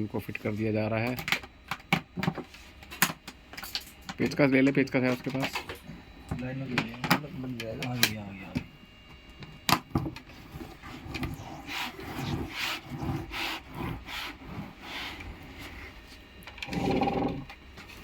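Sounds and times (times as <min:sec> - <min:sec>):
rubbing and scraping: 0:10.3 - 0:17.4.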